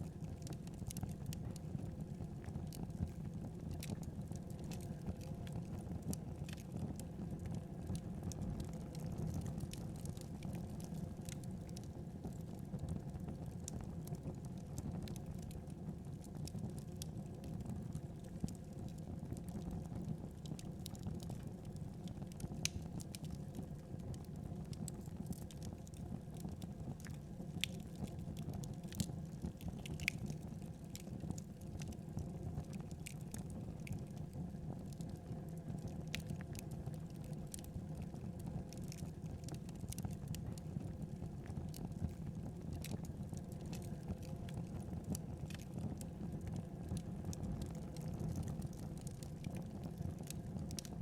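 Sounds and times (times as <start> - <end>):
burning logs crackling: 0.1 - 51.0.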